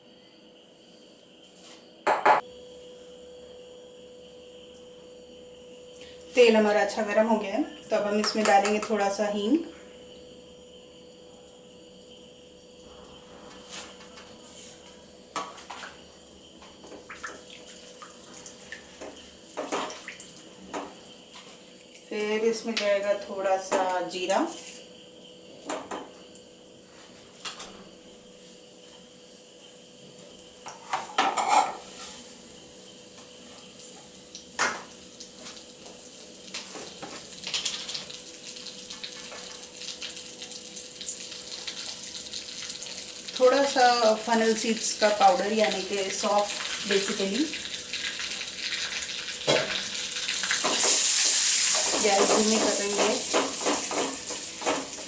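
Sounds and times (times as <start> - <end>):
faint steady hum: 0.0 - 55.0
hot oil sizzling and crackling: 30.7 - 55.0.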